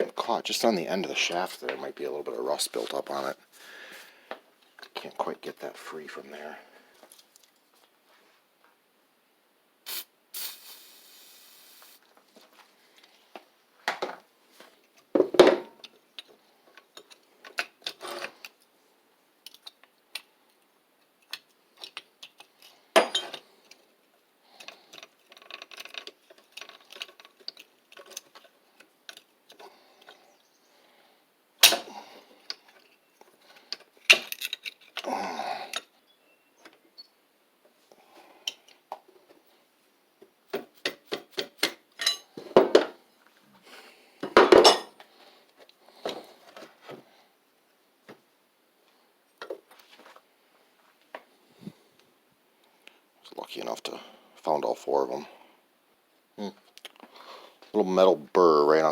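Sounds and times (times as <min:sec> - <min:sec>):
metal parts clinking and knocking: 0:21.2 - 0:23.8, 0:24.6 - 0:29.3, 0:33.7 - 0:35.0, 0:40.5 - 0:42.9.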